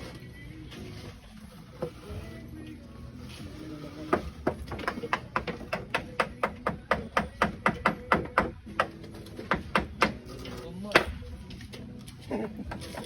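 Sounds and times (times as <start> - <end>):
hammer striking nails: 4.2 - 10.3.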